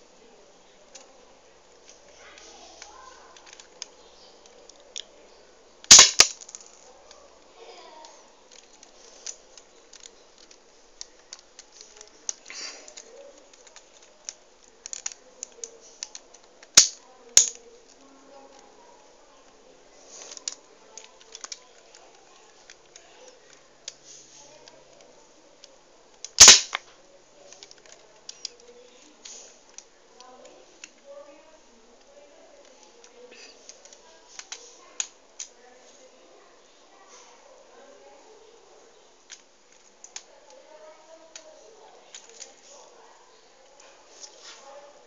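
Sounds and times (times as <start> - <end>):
plastic toy clicks and rattles: 2.8 - 5.1, 8.5 - 18.7, 20.2 - 24.0, 24.6 - 26.9, 32.6 - 35.6
loud sharp plastic snaps: 5.8 - 6.8, 8.5 - 17.6, 26.2 - 27.0.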